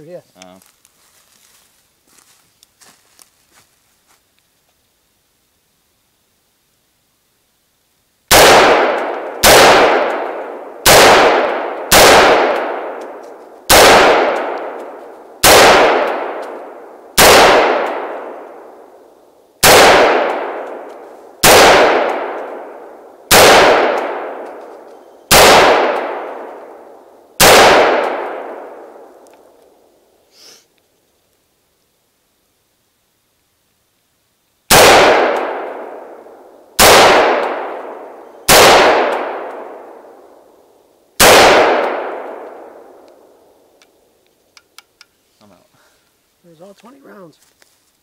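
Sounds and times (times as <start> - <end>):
rifle shots echoing: 8.3 - 19.0, 19.6 - 29.6, 34.7 - 40.5, 41.2 - 43.8.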